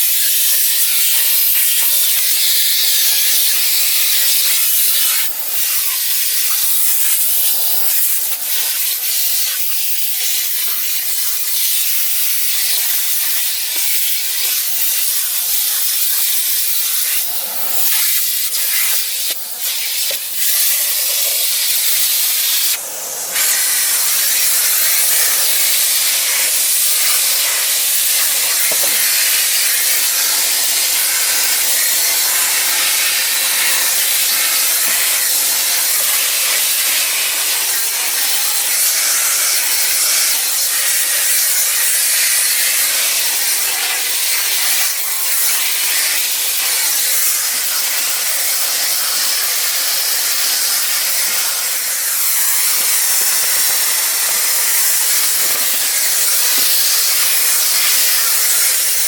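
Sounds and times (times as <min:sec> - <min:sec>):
vacuum cleaner running: 0:00.0 - 0:59.0.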